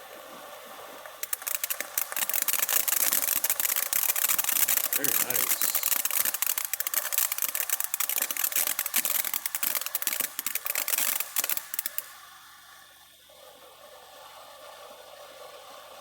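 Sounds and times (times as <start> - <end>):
fountain firework crackling hiss: 0.0 - 16.0.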